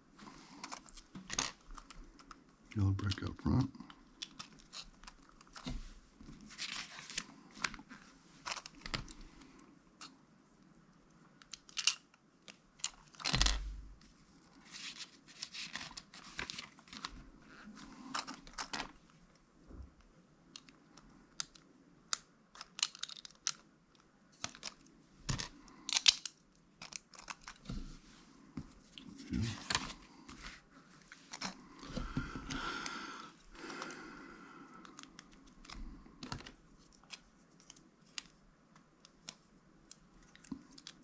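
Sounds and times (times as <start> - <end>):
rustling of plastic pieces: 6.4 - 9.2
plastic bricks clicking: 20.5 - 27.6.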